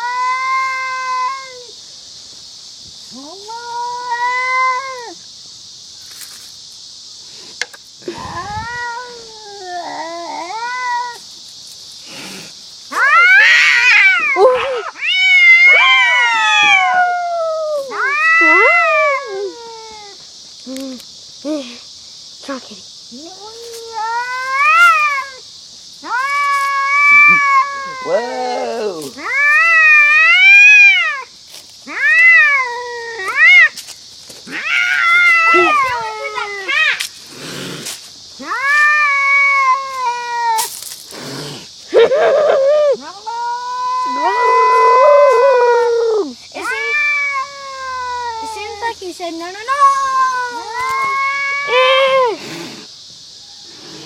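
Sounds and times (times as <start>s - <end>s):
cat yowling: 0.0s - 1.7s, 3.2s - 5.2s, 8.1s - 11.2s, 12.9s - 20.2s, 23.3s - 25.4s, 26.0s - 31.3s, 31.9s - 33.7s, 34.5s - 37.0s, 38.4s - 40.7s, 42.1s - 48.8s, 49.6s - 52.4s.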